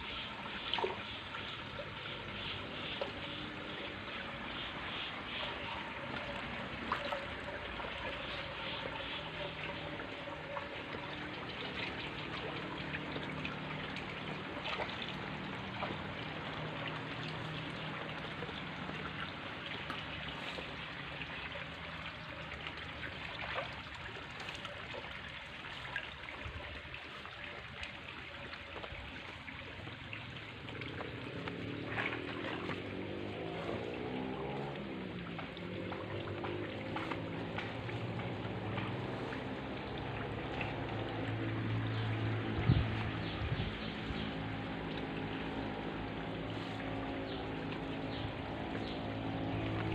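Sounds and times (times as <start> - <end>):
water pouring and trickling: 0.0 - 49.9.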